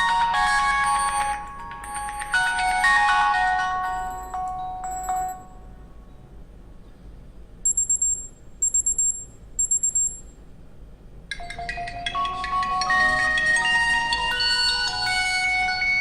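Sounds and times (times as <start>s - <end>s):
chiming ringtone melody: 0.0s - 5.8s, 11.3s - 16.0s
rapid high-pitched beeps: 7.7s - 10.3s.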